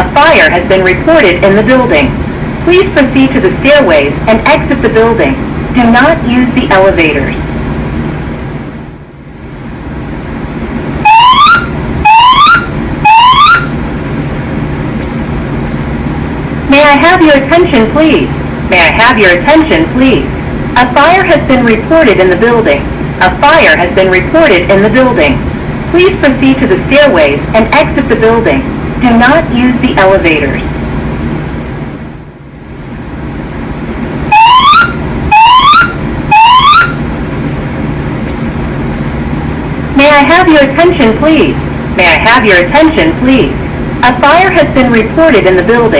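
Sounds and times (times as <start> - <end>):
steady low hum: 0.0 - 45.9
rising whoop alarm tones: 11.0 - 13.8, 34.3 - 37.0.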